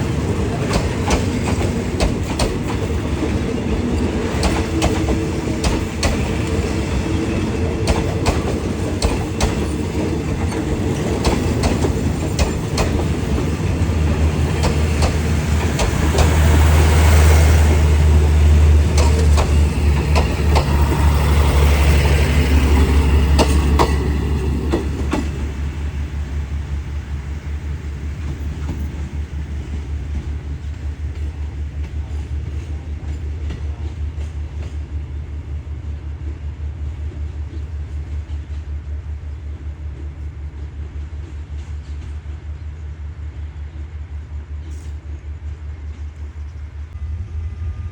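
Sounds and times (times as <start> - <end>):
train wheels clicking over rail joints: 0.0 - 42.9
deep diesel engine hum: 10.8 - 29.9.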